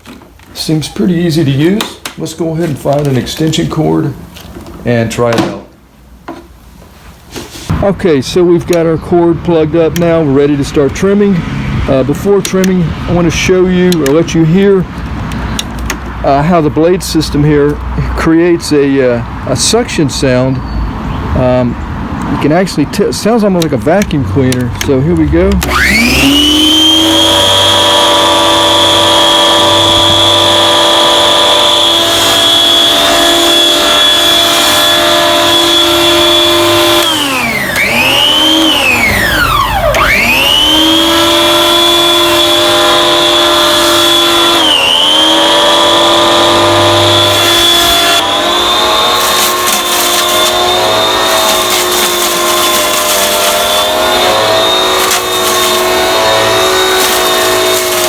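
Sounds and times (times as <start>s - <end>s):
electric hedge trimmer whining: 23.3s - 58.0s.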